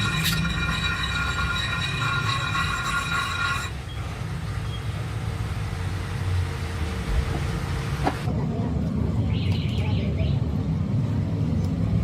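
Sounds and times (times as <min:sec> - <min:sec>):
machinery high whine: 0:00.0 - 0:03.8.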